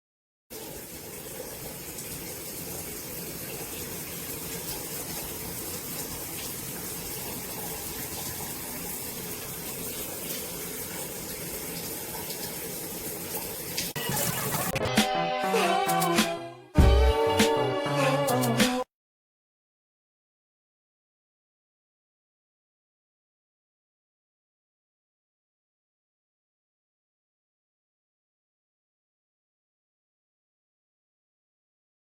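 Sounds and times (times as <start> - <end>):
shower water running: 0.5 - 14.8.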